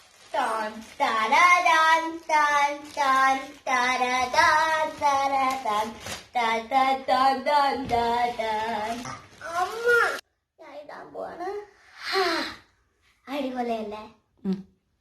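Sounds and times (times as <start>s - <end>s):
girl singing in a high voice: 0.4s - 10.2s.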